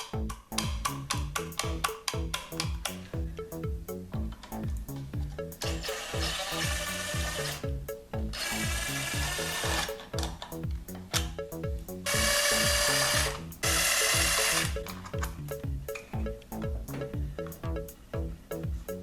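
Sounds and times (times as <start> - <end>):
background music with steady beat: 0.0 - 19.0
power drill running: 12.1 - 14.7.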